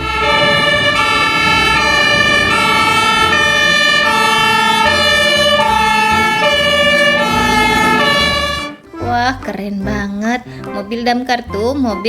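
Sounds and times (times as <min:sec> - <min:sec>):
two-tone fire truck siren: 0:00.0 - 0:08.9.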